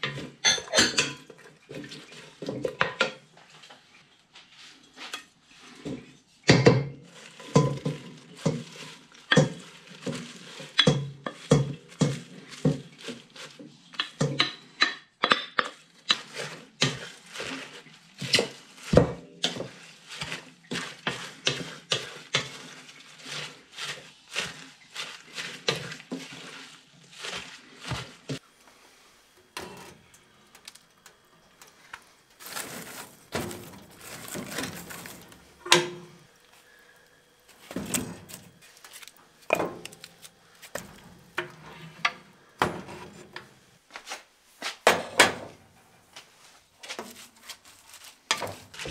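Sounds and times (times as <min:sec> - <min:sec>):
hard objects clattering: 0:29.5 - 0:43.5.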